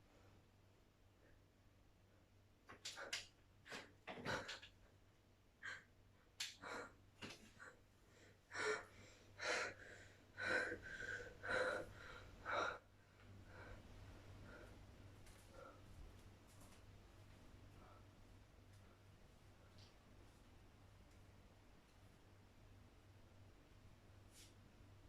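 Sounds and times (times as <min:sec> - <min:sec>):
woman breathing hard: 0:06.5 - 0:14.8.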